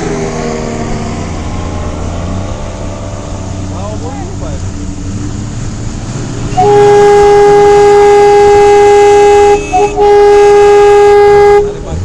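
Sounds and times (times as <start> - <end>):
vehicle horn blowing: 6.5 - 11.9.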